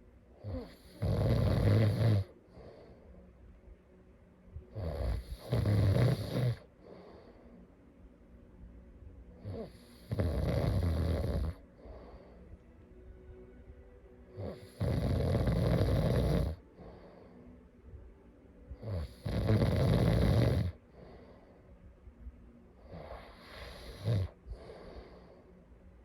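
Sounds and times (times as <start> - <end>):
person snoring: 0.4 - 2.8, 4.7 - 7.1, 9.4 - 12.4, 14.4 - 17.2, 18.8 - 21.1, 22.8 - 25.3.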